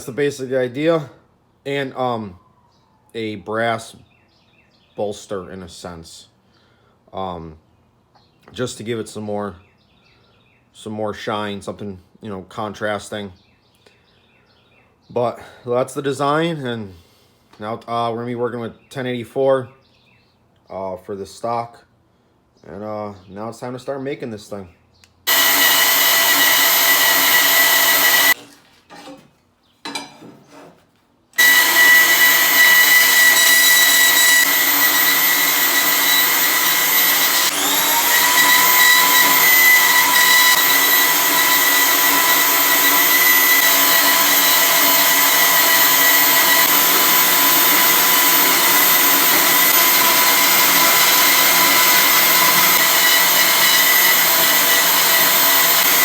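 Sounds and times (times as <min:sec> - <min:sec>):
electric grinder whining: 0:25.3 - 0:28.4, 0:31.4 - 0:56.0.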